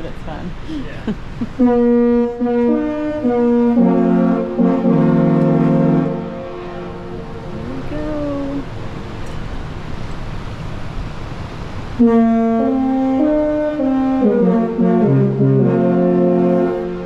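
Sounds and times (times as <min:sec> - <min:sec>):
steady noisy rumble: 0:00.0 - 0:17.0
ship horn playing a tune: 0:01.4 - 0:08.7, 0:11.9 - 0:17.0.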